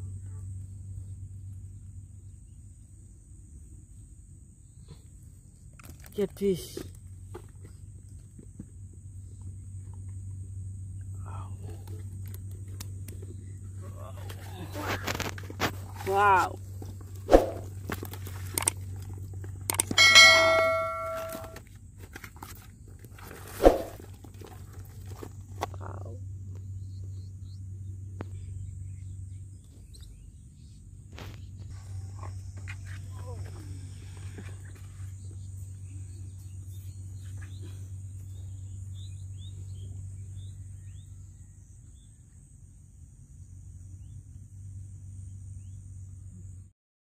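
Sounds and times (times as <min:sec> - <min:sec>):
steady low hum: 0:00.0 - 0:05.9, 0:06.9 - 0:22.0, 0:22.6 - 0:46.7
bell-like metallic ring: 0:20.0 - 0:21.6.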